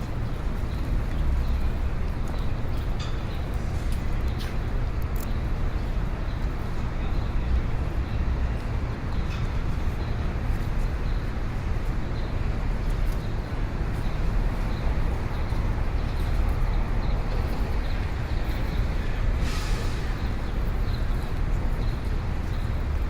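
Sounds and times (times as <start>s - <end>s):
traffic rumble: 0.0s - 23.0s
short sharp hiss: 19.4s - 20.2s.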